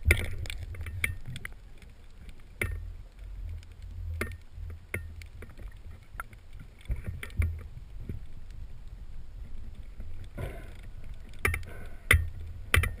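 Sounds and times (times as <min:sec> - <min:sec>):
underwater water rumble: 0:00.0 - 0:13.0
sharp clicks and knocks: 0:02.6 - 0:02.9, 0:03.6 - 0:08.2, 0:11.2 - 0:13.0.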